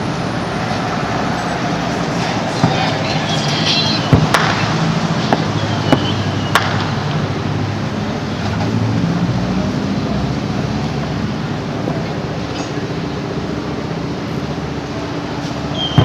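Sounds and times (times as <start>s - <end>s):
fireworks popping: 2.6s - 7.0s.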